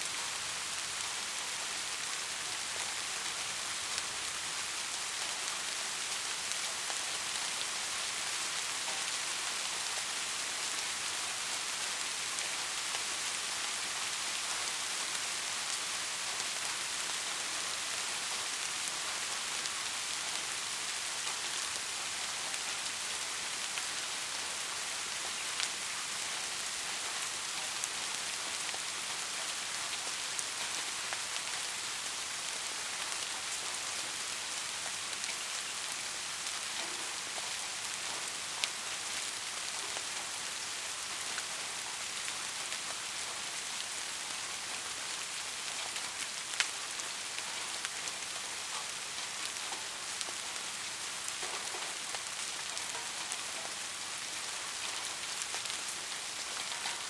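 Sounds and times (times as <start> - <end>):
steady rainfall hiss: 0.0 - 57.0.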